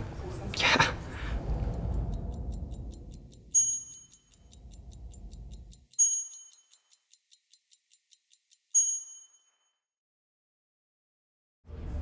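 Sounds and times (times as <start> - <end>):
low rumble: 0.9 - 3.6, 4.3 - 5.8
rapid clock-like ticking: 1.2 - 9.2
bright metallic ding: 3.5 - 4.3, 6.0 - 6.9, 8.8 - 9.7.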